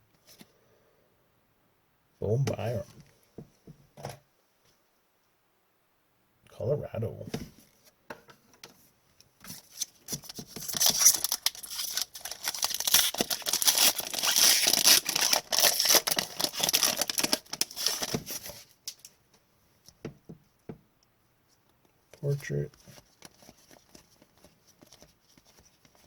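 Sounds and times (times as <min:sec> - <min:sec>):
foil wrapper tearing and crinkling: 0:09.6 - 0:19.1.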